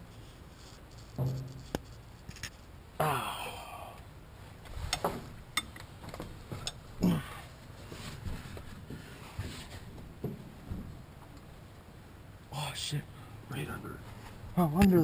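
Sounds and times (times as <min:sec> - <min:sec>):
man grunting and sighing: 0:03.0 - 0:04.0, 0:07.0 - 0:07.5.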